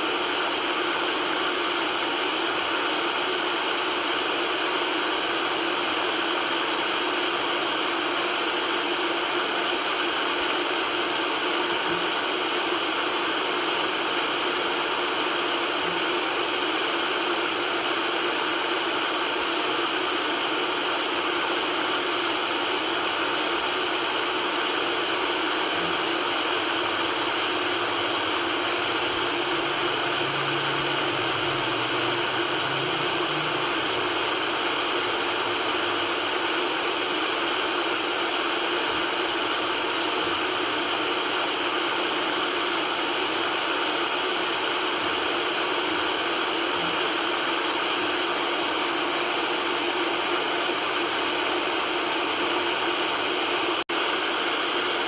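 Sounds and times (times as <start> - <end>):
white noise hiss: 25.8 - 37.2.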